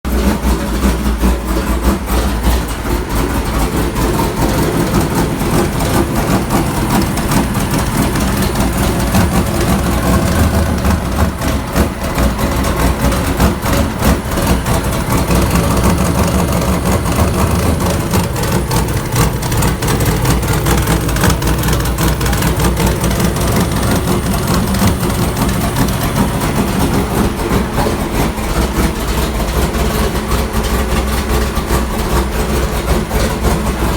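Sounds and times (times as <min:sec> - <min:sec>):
car engine idling roughly: 0:00.0 - 0:33.9.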